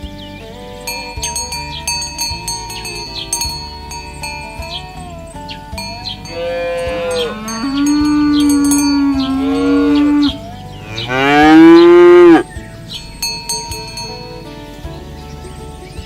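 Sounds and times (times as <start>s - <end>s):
cattle mooing: 5.9s - 12.5s.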